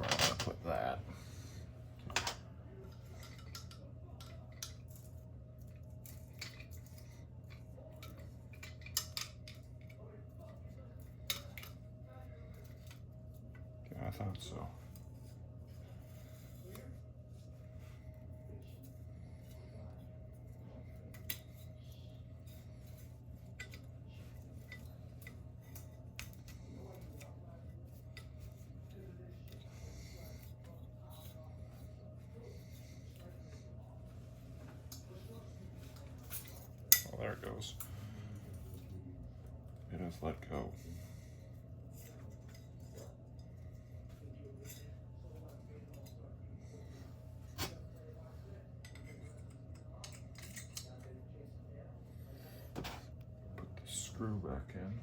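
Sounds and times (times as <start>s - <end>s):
steady low hum: 0.0s - 55.0s
light fixture parts clicking: 48.8s - 51.1s.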